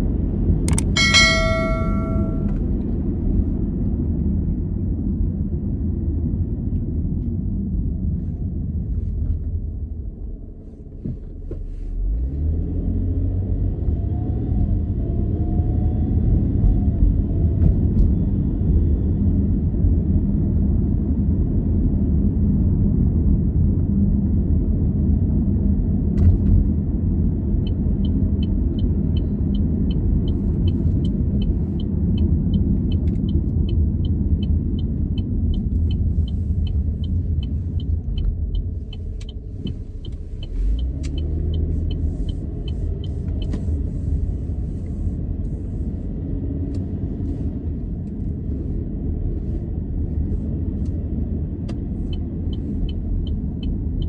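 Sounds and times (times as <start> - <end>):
car engine and tyre rumble: 0.0 - 54.0
turn signal ticking: 0.7 - 2.6, 27.6 - 45.6, 51.7 - 54.0.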